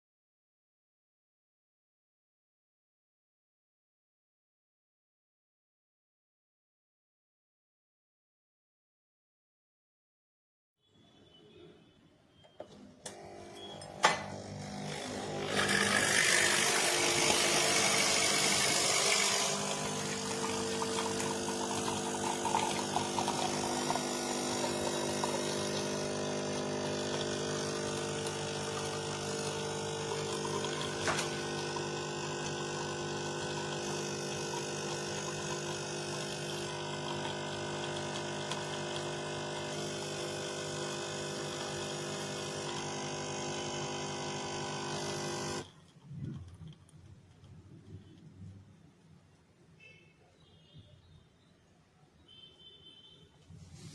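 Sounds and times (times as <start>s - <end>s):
pump humming: 13.1s - 45.7s.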